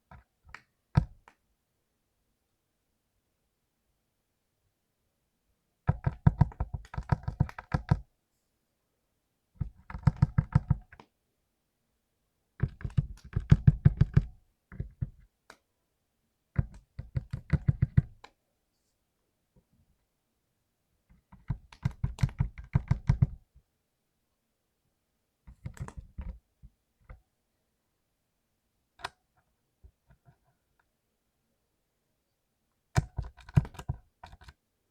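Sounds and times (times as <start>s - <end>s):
mechanical keyboard typing: 5.9s - 8.0s, 9.6s - 11.0s, 12.6s - 15.2s, 16.6s - 18.3s, 21.3s - 23.4s, 25.5s - 26.4s, 33.0s - 34.6s.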